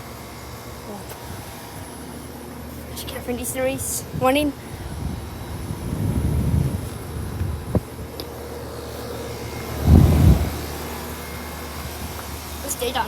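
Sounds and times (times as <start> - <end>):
air conditioner humming: 0.0 - 13.0
low rumble: 9.3 - 12.2.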